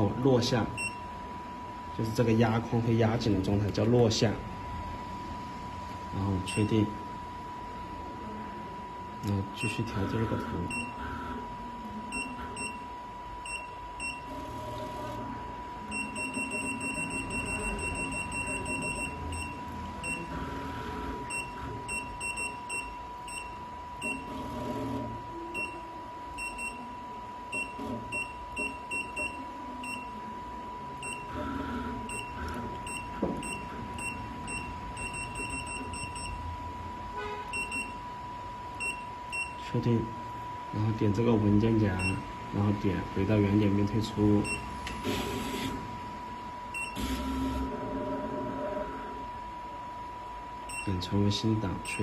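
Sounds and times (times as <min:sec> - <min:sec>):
steady high-pitched tone: 0:15.4 - 0:24.3.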